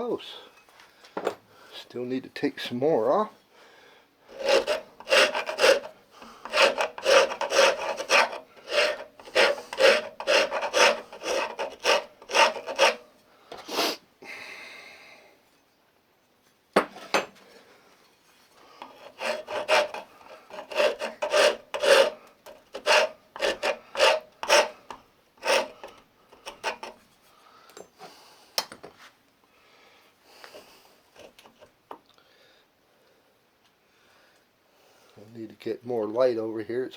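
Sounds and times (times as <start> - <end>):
rasp file scraping wood: 4.3 - 13.1, 18.8 - 27.0.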